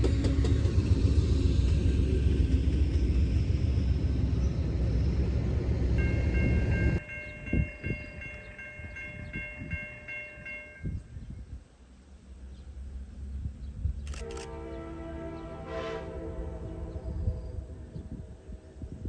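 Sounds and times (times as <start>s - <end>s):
train rumbling past: 0.0s - 19.0s
train horn chord: 14.2s - 19.0s.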